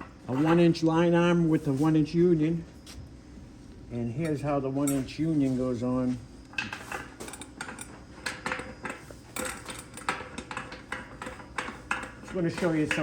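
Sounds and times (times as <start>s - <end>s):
metal pipe fittings clinking: 4.2s - 5.1s.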